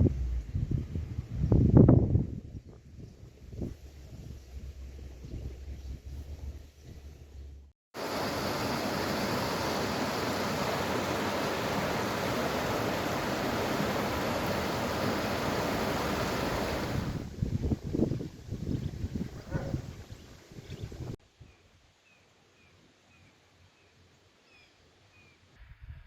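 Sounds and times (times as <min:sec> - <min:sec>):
low bumps: 0:00.0 - 0:07.7.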